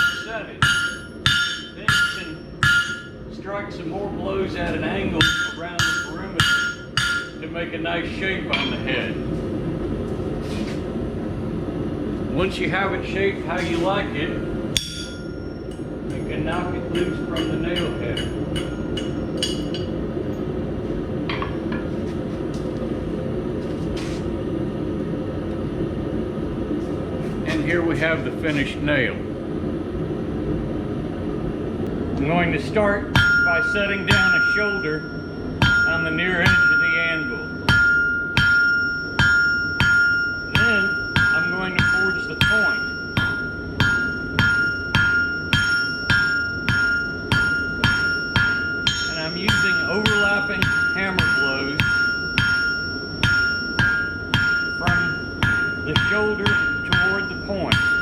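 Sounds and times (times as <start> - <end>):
hammer striking metal: 0.0 - 3.2, 5.2 - 7.4, 8.5 - 8.8, 14.8 - 20.0, 33.2 - 58.0.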